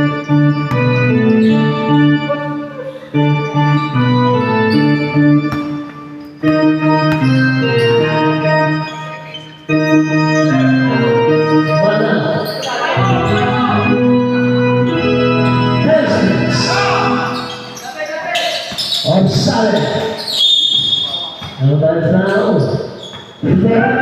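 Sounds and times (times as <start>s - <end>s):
electronic organ chords: 0.0s - 17.8s.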